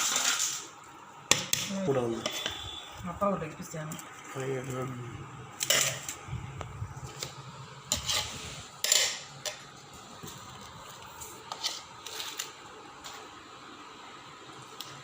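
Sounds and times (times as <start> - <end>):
metal utensils clinking on pot: 5.6 - 6.2, 8.8 - 9.6.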